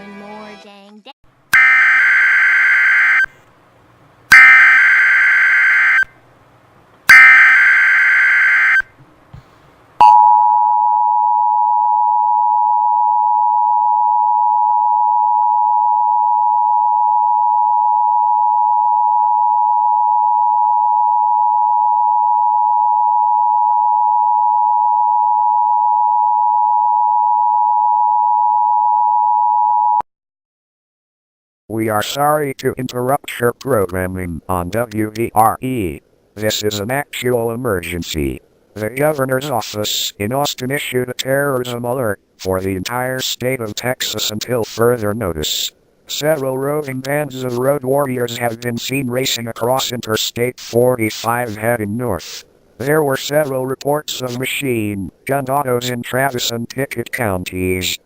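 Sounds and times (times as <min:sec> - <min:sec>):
two-tone attention signal: 0:01.6 - 0:03.3, 0:04.3 - 0:06.1, 0:07.1 - 0:08.9.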